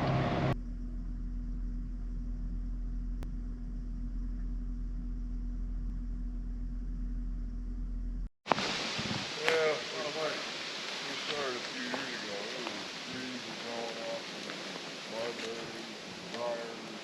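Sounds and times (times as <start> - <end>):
car engine running: 0.0 - 8.3.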